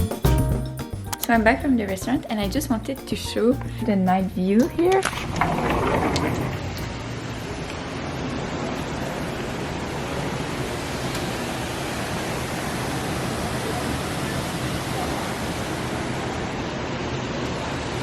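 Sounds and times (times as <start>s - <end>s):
steady rushing noise: 5.0s - 18.0s.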